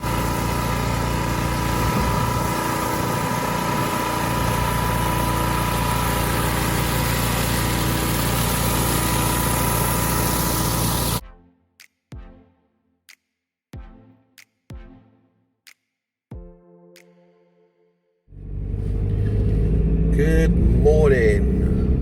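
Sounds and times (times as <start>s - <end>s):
pressure washer engine drone: 0.0s - 11.2s, 18.3s - 22.0s
water spray hissing: 0.8s - 11.2s.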